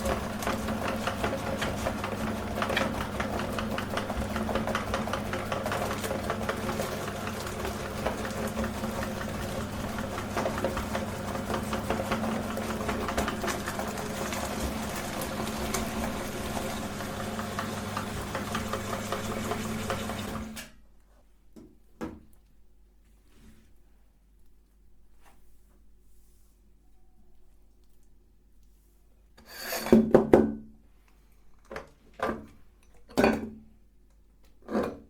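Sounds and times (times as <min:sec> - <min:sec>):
electric meat grinder humming: 0:00.0 - 0:20.6.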